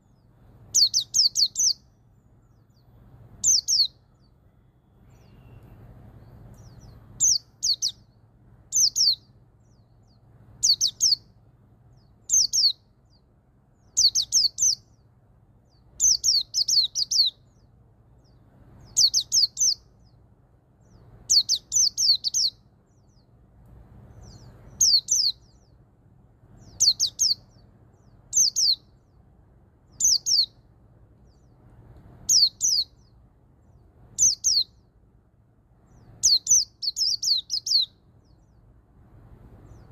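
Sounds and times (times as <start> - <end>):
bird singing high falling notes: 0.0 - 11.3, 24.2 - 25.8.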